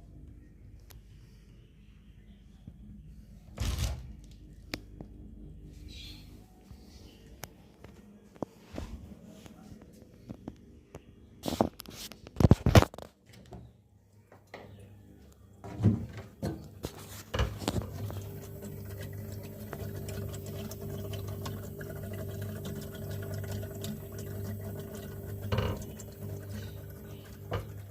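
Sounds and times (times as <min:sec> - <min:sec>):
refrigerator compressor humming: 0:02.0 - 0:08.2, 0:17.4 - 0:27.9.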